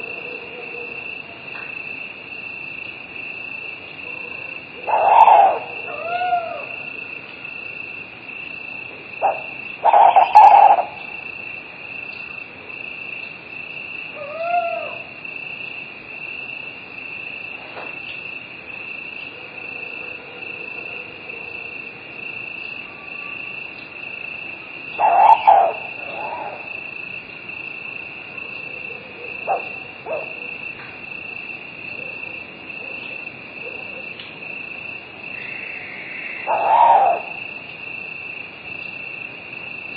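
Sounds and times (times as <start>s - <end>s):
crickets chirring: 0.0s - 39.9s
owl hooting: 4.0s - 7.0s, 9.2s - 11.2s, 14.1s - 15.1s, 24.9s - 26.8s, 28.8s - 30.6s, 35.3s - 37.6s.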